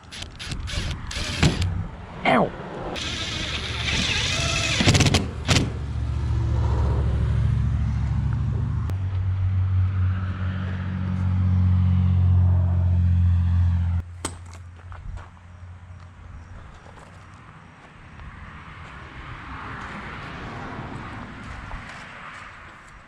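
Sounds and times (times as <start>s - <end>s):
sharp clicks: 0.0s - 1.8s, 3.0s - 5.8s
truck engine droning: 0.0s - 14.0s.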